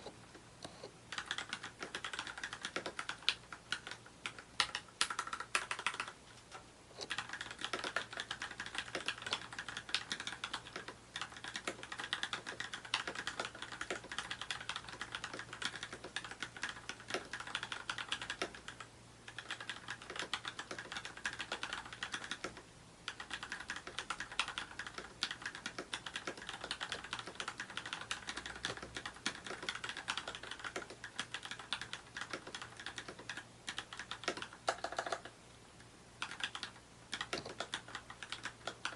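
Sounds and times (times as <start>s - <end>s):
mechanical keyboard typing: 1.1s - 35.4s, 36.2s - 38.9s.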